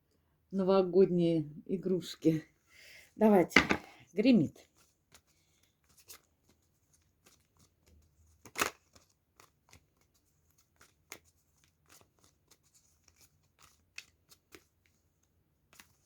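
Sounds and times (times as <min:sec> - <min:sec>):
cards being shuffled: 0:04.7 - 0:16.0.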